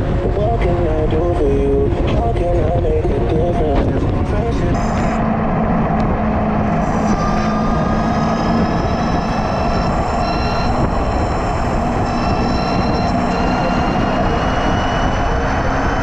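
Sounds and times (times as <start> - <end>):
wind and road noise: 0.0 - 16.0
electric motor whining: 4.6 - 16.0.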